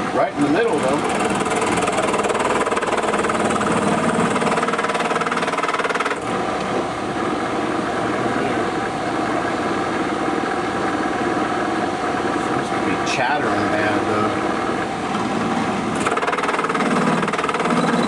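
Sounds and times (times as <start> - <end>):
milling machine tool chattering: 0.4 - 6.3, 16.0 - 18.0.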